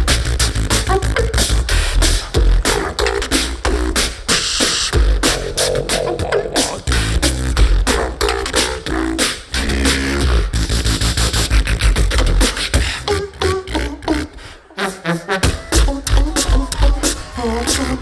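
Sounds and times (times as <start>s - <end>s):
person beatboxing: 0.0s - 18.0s.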